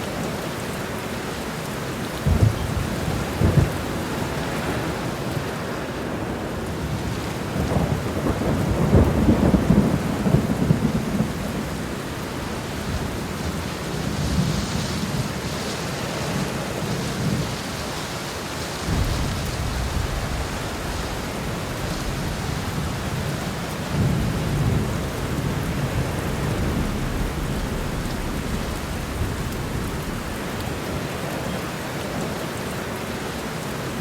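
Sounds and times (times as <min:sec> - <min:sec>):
heavy rain: 0:00.0 - 0:34.0
thunder crack: 0:02.2 - 0:05.0, 0:18.8 - 0:31.2
rolling thunder: 0:02.2 - 0:15.5, 0:18.8 - 0:31.8.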